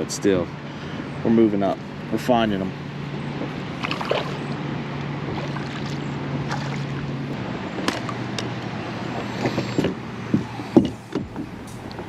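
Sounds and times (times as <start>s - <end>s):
low steady hum: 0.0s - 12.0s
wind: 0.0s - 12.0s
water lapping: 1.8s - 7.4s.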